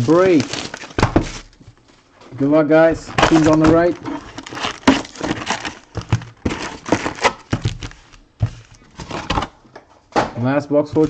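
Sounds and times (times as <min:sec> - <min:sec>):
cardboard box tapping and knocking: 0:03.1 - 0:09.5.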